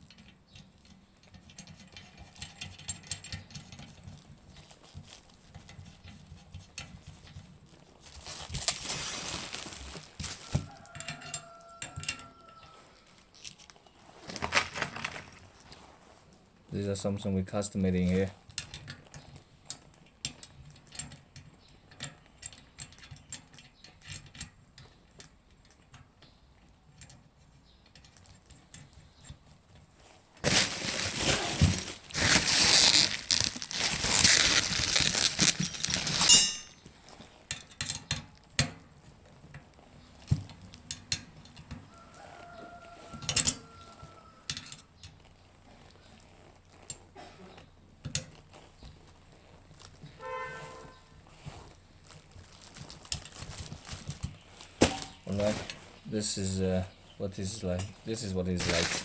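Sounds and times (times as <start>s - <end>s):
small metal parts clicking: 32.1s - 36.9s.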